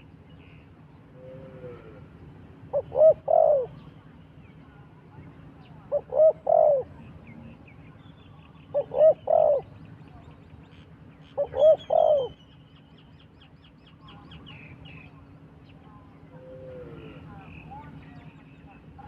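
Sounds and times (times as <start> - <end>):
dove cooing: 1.2 - 2.1, 2.7 - 3.9, 5.9 - 7.0, 8.7 - 9.8, 11.3 - 12.4, 16.3 - 17.3.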